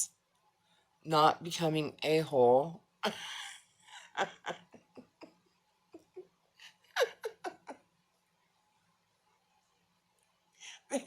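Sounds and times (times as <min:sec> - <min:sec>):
person chuckling softly: 0:03.0 - 0:07.8.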